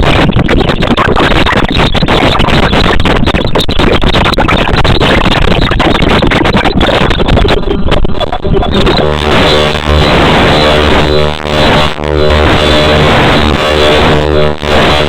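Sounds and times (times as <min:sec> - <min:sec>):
loud dense music: 0:08.7 - 0:15.0.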